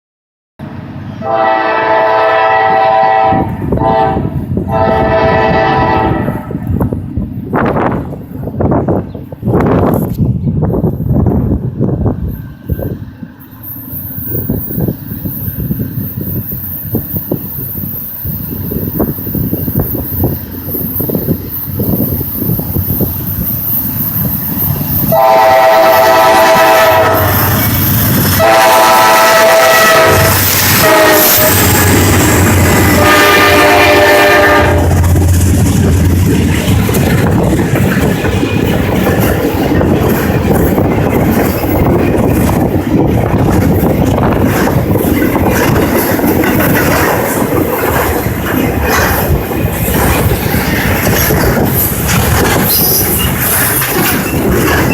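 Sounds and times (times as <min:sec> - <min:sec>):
freight train rumbling past: 0:00.6 - 0:54.9
locomotive horn blasts: 0:01.2 - 0:06.5, 0:25.1 - 0:27.6, 0:28.3 - 0:31.8, 0:32.8 - 0:35.0
wheels clattering over rail joints: 0:35.0 - 0:54.9.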